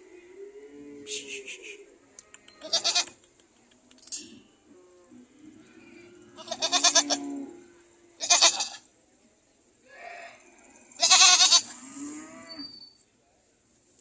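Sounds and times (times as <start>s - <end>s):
goats bleating: 2.6s - 3.2s, 6.4s - 7.3s, 8.2s - 8.8s, 11.0s - 11.7s.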